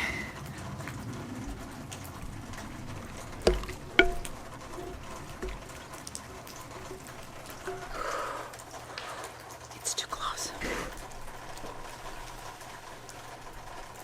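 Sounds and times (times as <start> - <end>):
low background noise: 0.0 - 14.0
sharp knocks with ringing tone: 2.2 - 8.2.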